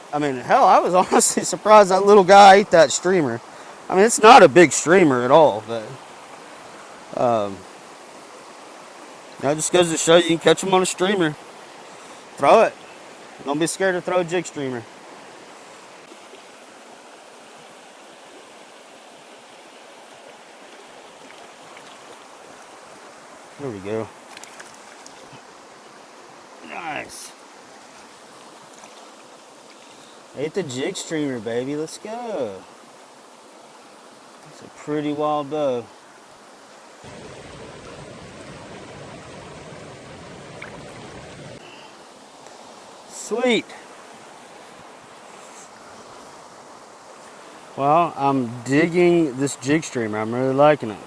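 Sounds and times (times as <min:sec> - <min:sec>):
stream flowing: 0:00.0 - 0:51.0.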